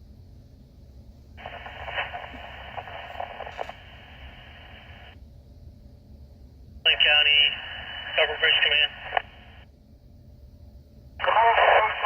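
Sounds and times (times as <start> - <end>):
two-way radio hiss and crackle: 1.4 - 5.2, 6.9 - 9.7, 11.2 - 12.0.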